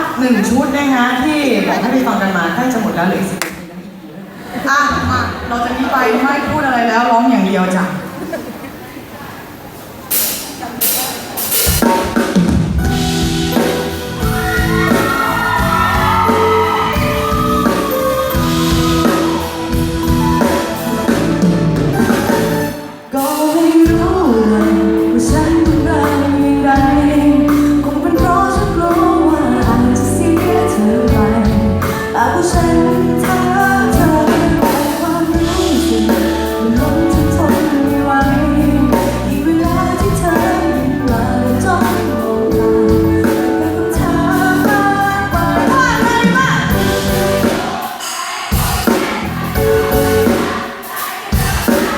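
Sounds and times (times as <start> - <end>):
live pop band playing: 10.1 - 51.9
woman singing: 23.1 - 46.7.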